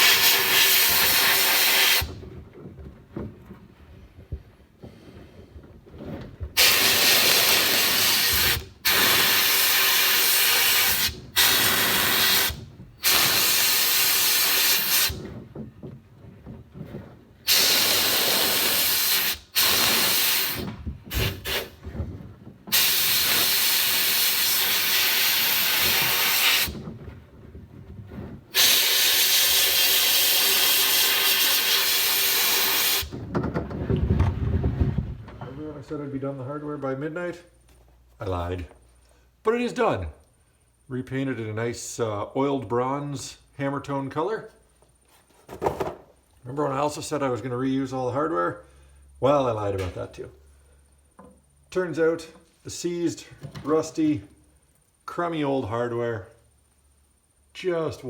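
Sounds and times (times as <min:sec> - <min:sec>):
spray nozzle hissing: 0:00.0 - 0:02.1, 0:06.6 - 0:15.2, 0:17.5 - 0:21.8, 0:22.7 - 0:26.8, 0:28.5 - 0:33.1.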